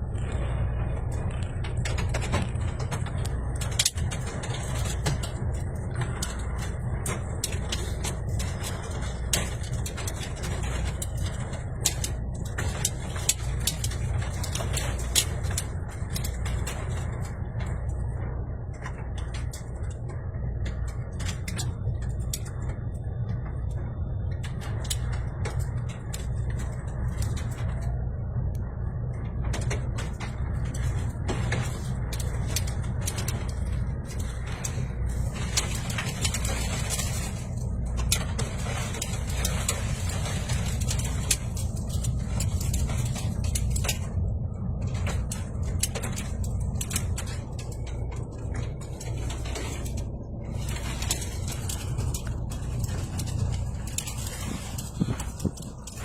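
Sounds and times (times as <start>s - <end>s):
strong wind on microphone: 20.0s - 56.0s.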